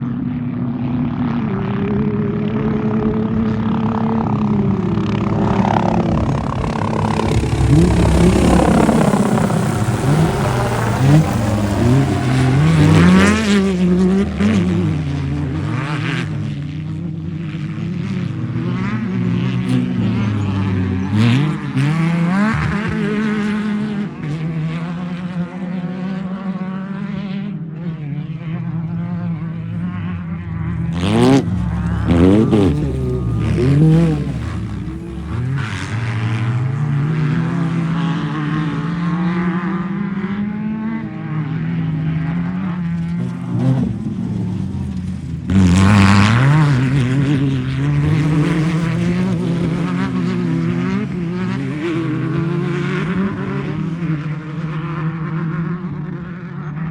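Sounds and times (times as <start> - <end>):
race car engines revving: 0.0 - 56.9.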